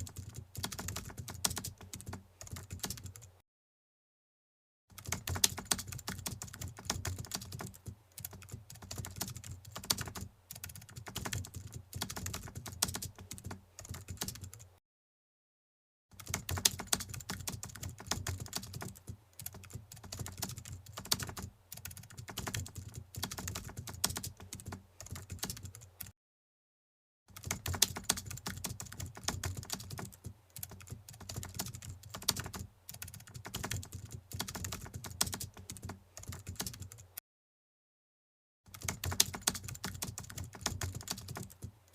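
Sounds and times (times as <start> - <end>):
keyboard typing clicks: 5.0 - 14.6, 27.4 - 37.0.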